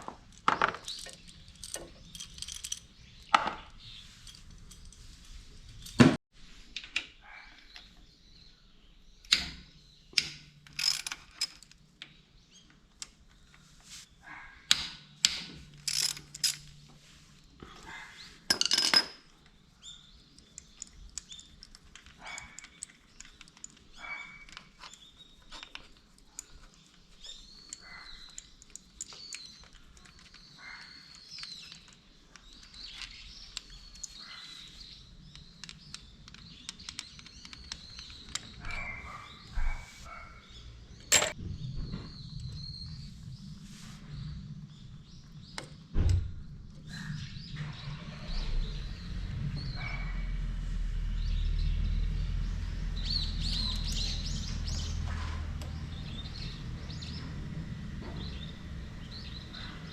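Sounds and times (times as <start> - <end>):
metal tools clinking on workbench: 0.0 - 5.1, 15.7 - 16.8, 18.5 - 19.3, 41.0 - 41.4.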